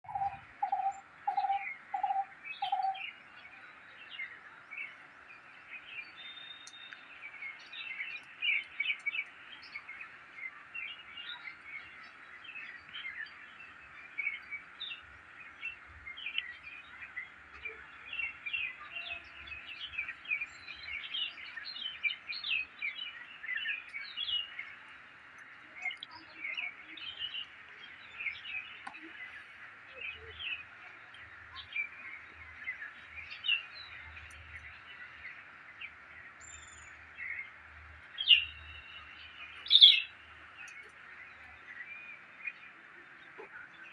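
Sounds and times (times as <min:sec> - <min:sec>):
birds chirping chorus: 0:00.0 - 0:43.9
lower repeated bird notes: 0:00.0 - 0:43.9.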